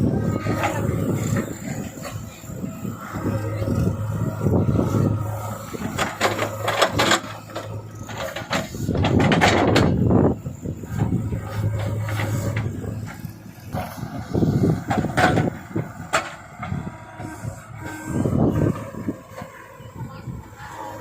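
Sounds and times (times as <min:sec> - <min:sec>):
diesel machinery humming: 0:00.0 - 0:21.0
metal clanking and knocking: 0:05.6 - 0:10.3, 0:14.6 - 0:16.9.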